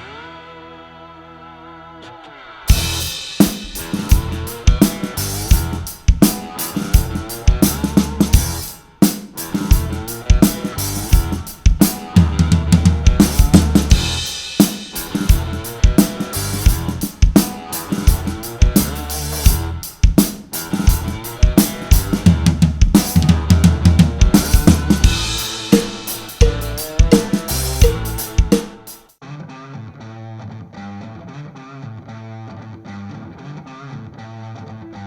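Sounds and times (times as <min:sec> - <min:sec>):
backing song: 0:02.7 - 0:08.6, 0:23.0 - 0:29.1
drum kit playing: 0:02.7 - 0:29.2.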